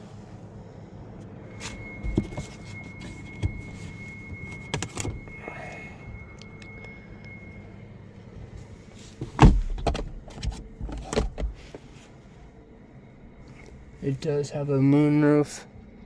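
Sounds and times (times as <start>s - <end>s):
low hum: 0.0s - 16.0s
thin high tone: 0.4s - 9.2s.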